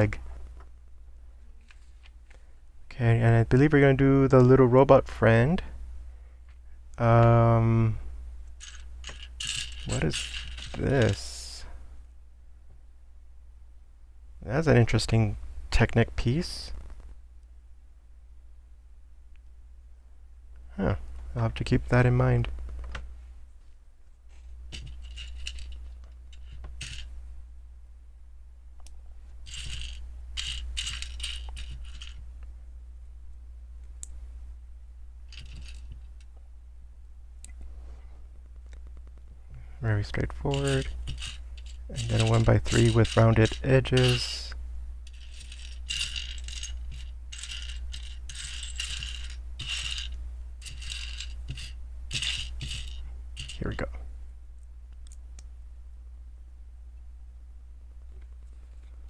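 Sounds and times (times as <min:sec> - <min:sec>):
steady low hum: 0:00.0 - 0:59.0
plastic pieces clattering: 0:08.6 - 0:11.3, 0:24.8 - 0:25.8, 0:29.5 - 0:32.2, 0:40.5 - 0:44.4, 0:45.1 - 0:53.8
plastic toy bricks clinking: 0:08.6 - 0:11.4, 0:24.8 - 0:27.1, 0:29.5 - 0:32.2, 0:35.3 - 0:36.1, 0:40.3 - 0:44.4, 0:45.1 - 0:53.9.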